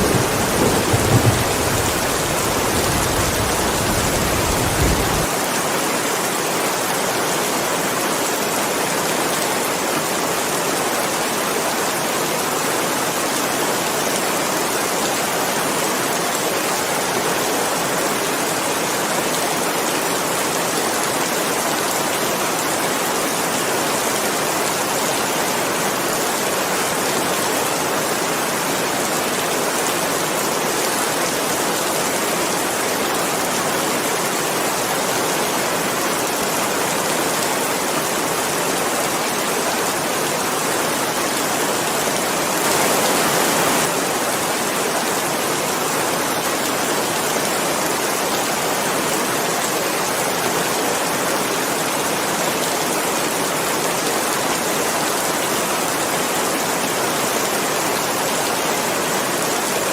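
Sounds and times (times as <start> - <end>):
heavy rain hissing: 0.0 - 6.0, 41.8 - 44.9.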